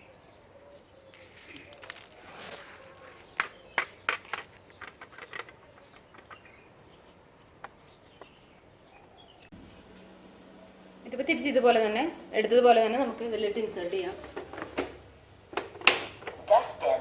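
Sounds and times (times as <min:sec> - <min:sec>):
rustling: 0:01.0 - 0:08.4
plastic clicks and taps: 0:03.3 - 0:06.6.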